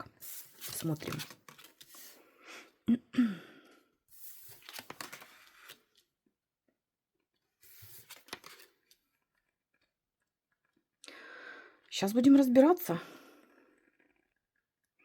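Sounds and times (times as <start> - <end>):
cards rustling and clicking: 0.1 - 2.2, 4.2 - 6.1, 7.6 - 9.5.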